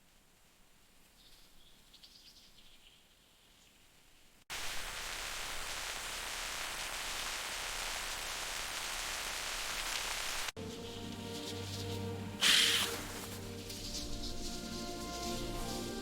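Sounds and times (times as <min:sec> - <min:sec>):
forest ambience: 0:00.0 - 0:16.0
faint high bird chirps: 0:01.1 - 0:03.8
heavy rain: 0:04.5 - 0:10.6.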